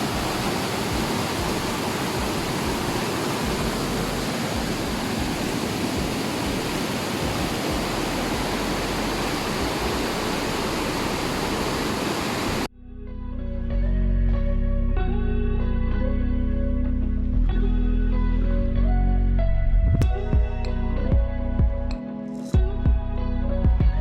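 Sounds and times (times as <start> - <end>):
river water rushing: 0.0 - 12.7.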